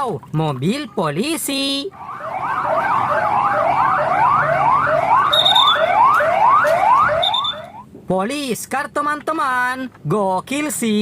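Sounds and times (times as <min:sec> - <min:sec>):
police siren yelping: 0:01.9 - 0:07.8.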